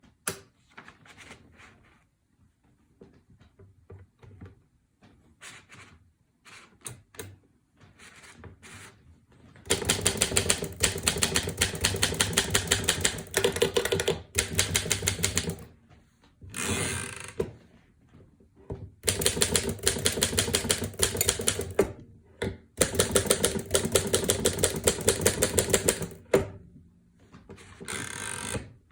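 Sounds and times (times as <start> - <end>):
typewriter keystrokes: 9.7 - 15.7, 19.0 - 21.9, 22.8 - 26.4.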